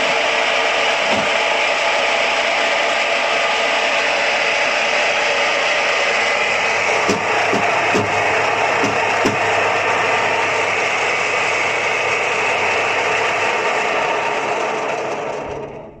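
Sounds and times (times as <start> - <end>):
apple grinder grinding: 0.0 - 15.9
sharp knocks: 7.0 - 8.2, 8.8 - 9.5.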